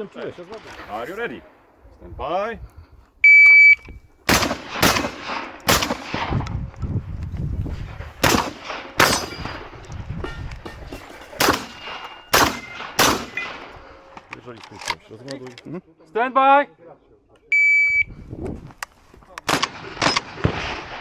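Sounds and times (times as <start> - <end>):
shot timer beep: 3.2 - 3.9
shotgun shots: 4.3 - 6.5, 8.2 - 9.8, 11.4 - 13.9.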